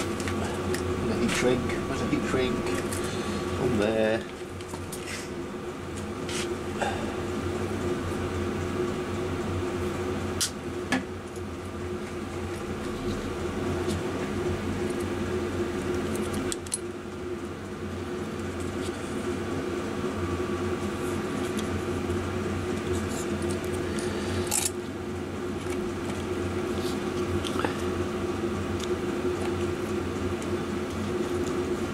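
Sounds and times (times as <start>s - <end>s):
electric motor hum: 0.0s - 31.9s
clicks of wire and tools: 24.4s - 24.8s.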